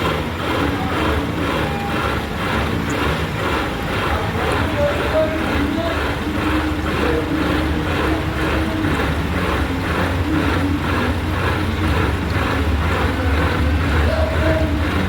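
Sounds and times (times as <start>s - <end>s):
metal lathe humming: 0.0s - 15.0s
rasping cutting noise: 0.0s - 15.0s.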